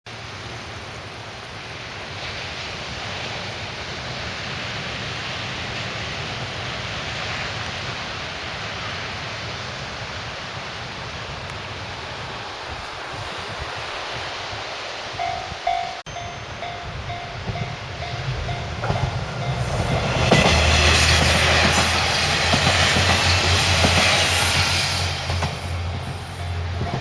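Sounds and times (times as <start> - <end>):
ocean surf on shore: 0.1 - 27.0
wind rumble on microphone: 0.7 - 20.5.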